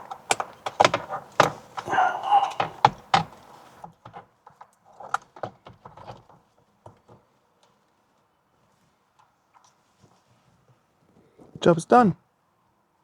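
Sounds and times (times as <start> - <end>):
hand tools clicking on metal: 0.0 - 3.8.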